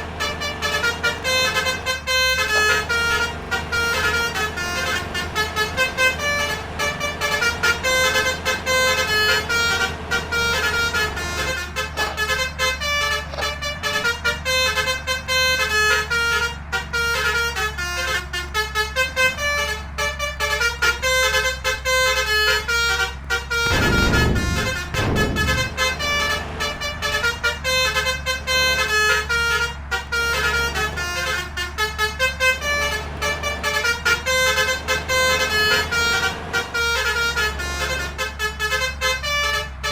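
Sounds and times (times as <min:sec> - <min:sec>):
bus horn playing melody: 0:00.0 - 0:39.9
vehicle low drone: 0:00.0 - 0:39.9
brief low rumble: 0:23.7 - 0:27.0.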